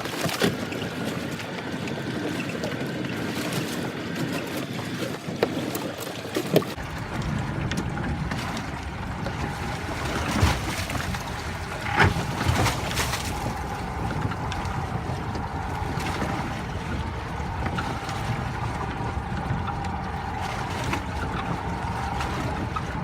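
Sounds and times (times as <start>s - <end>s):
boat engine low rumble: 0.0s - 23.0s
wind on microphone: 6.6s - 23.0s
faint steady hum: 6.7s - 23.0s.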